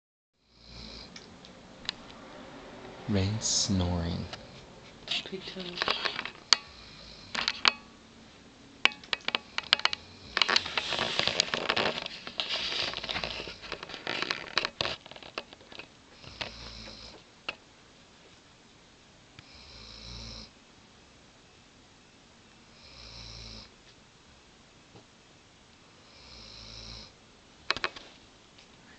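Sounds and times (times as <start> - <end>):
dog snoring: 0.4 - 1.2, 6.6 - 7.5, 16.2 - 17.2, 19.4 - 20.6, 22.7 - 23.7, 26.0 - 27.2
rustling: 4.4 - 6.5, 9.5 - 17.0.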